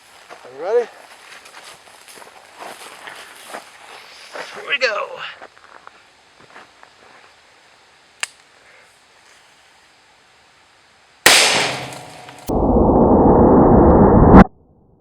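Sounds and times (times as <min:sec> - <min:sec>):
revolver gunshot: 0:11.3 - 0:12.5
dull muffled noise: 0:12.2 - 0:15.0.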